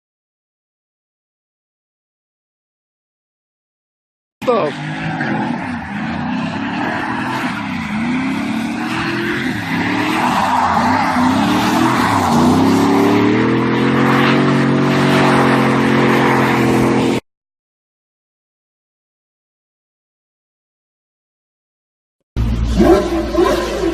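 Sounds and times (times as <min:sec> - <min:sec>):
car engine revving: 0:04.4 - 0:17.2, 0:22.4 - 0:23.9.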